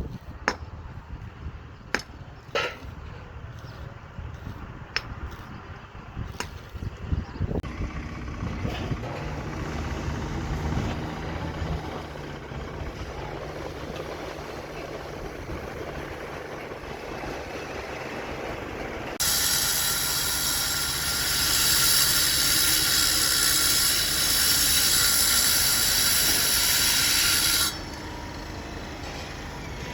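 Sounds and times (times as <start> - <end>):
machine engine running: 7.6 - 19.1.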